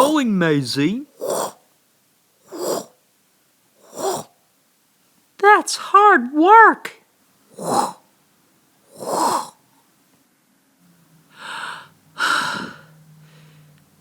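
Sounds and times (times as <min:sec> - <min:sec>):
person breathing heavily: 0:11.3 - 0:13.8.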